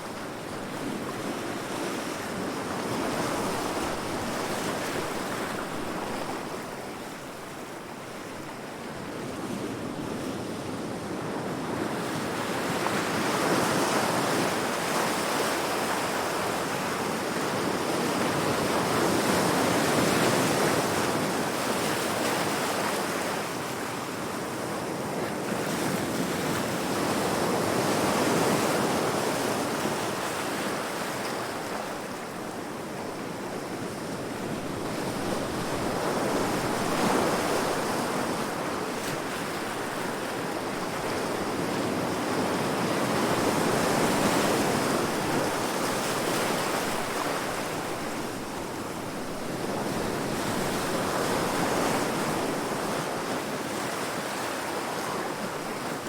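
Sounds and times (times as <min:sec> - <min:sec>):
ocean waves breaking on rocks: 0:25.3 - 0:56.0.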